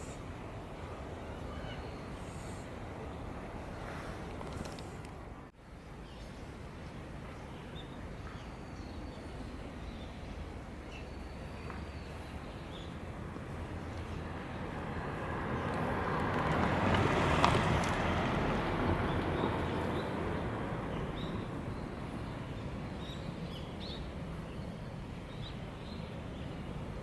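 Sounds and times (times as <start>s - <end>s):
vehicle passing by: 13.0s - 22.7s.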